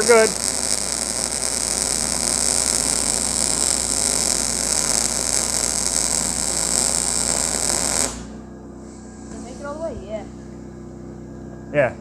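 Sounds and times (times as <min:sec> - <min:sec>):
welding arc crackling: 0:00.0 - 0:08.4.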